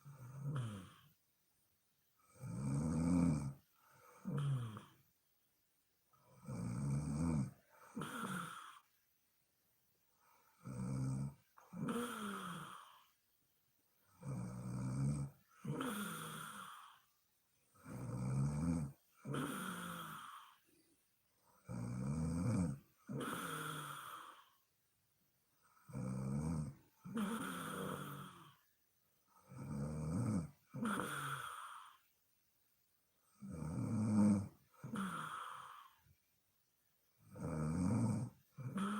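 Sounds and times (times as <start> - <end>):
woman snoring: 0.0 - 1.1, 2.3 - 5.0, 6.2 - 8.9, 10.2 - 13.2, 14.1 - 17.1, 17.8 - 20.7, 21.6 - 24.6, 25.7 - 28.6, 29.4 - 32.1, 33.3 - 36.0, 37.2 - 38.9.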